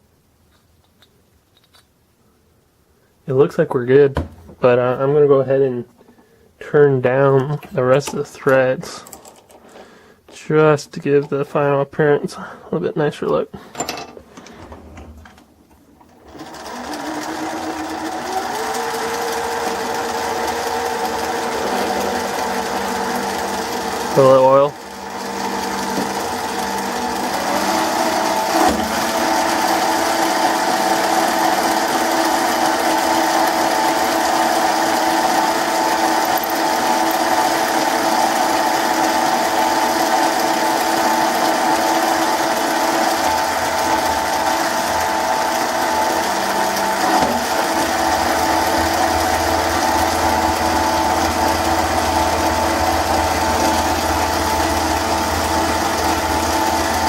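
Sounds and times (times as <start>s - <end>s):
lathe motor whining: 13.8s - 57.0s.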